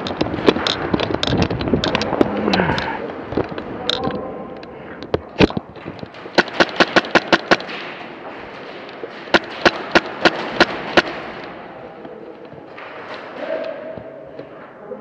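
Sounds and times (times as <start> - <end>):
airsoft gun shots: 6.2 - 8.2, 9.1 - 11.7.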